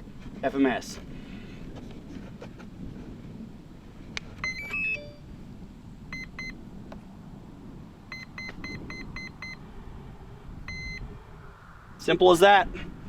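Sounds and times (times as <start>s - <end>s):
electronic beeps: 4.4s - 5.3s, 8.1s - 9.6s, 10.7s - 11.0s.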